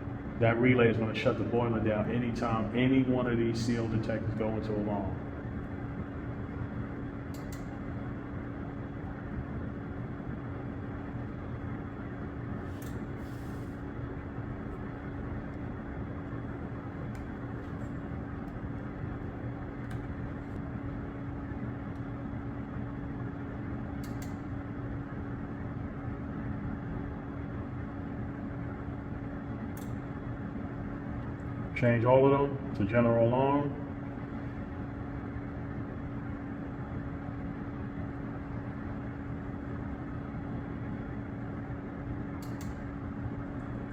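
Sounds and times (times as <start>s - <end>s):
machinery hum: 0.0s - 43.9s.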